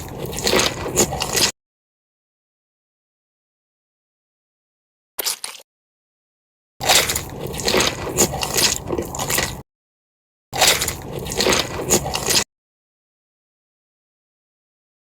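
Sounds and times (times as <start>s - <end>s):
chewing crisp food: 0.0s - 1.5s, 5.2s - 5.6s, 6.8s - 9.6s, 10.6s - 12.4s.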